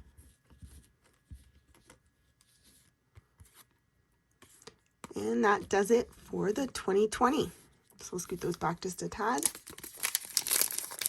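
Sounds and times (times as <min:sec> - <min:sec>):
trading cards rustling and clicking: 0:05.6 - 0:11.0.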